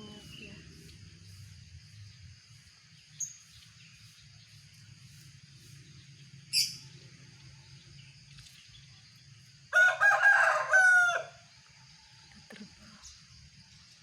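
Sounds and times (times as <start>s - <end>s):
high insect drone: 0.0s - 14.0s
small bird chirp: 2.9s - 9.3s
rooster crowing: 9.7s - 11.4s.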